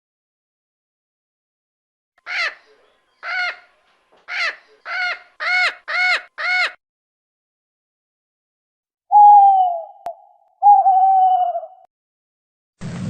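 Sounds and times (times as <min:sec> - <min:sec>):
bird calling short arched calls: 0:02.2 - 0:03.7.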